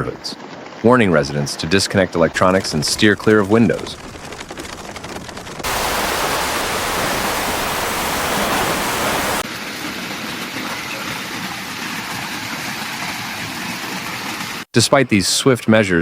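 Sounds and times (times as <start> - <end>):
storm rushing hiss: 3.8 - 9.4.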